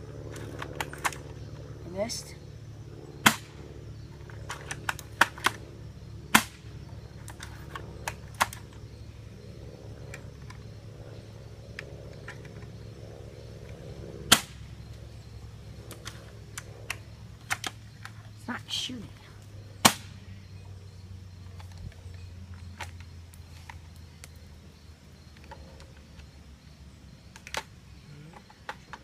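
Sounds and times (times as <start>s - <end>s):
steady low hum: 0.0s - 29.0s
airsoft rifle mechanical clicks: 4.3s - 5.6s, 27.3s - 27.7s.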